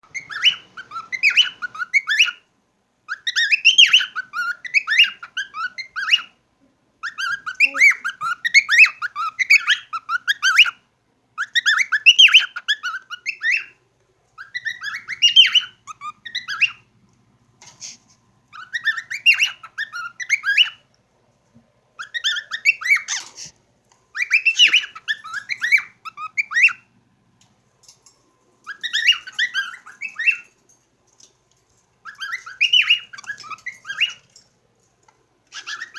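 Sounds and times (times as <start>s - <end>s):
cockatiels chattering: 0.1s - 2.5s, 3.1s - 6.4s, 7.0s - 10.8s, 11.4s - 13.8s, 14.4s - 16.9s, 17.6s - 20.9s, 22.0s - 27.0s, 27.8s - 31.4s, 32.0s - 34.5s, 35.5s - 35.9s.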